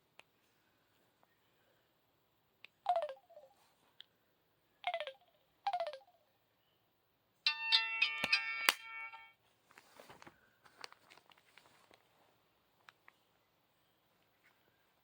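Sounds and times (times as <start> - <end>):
phone ringtone playing: 7.5 - 9.3.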